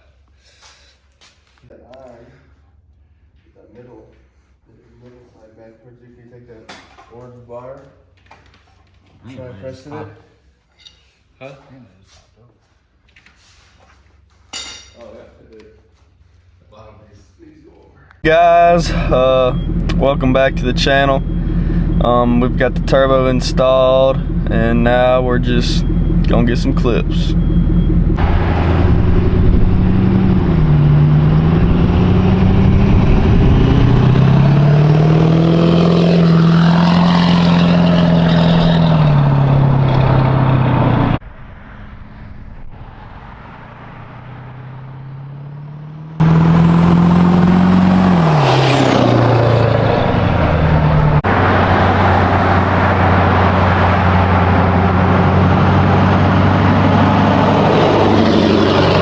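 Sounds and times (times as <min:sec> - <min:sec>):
diesel engine revving: 0:18.2 - 0:59.0
turbo whistle: 0:18.3 - 0:28.2.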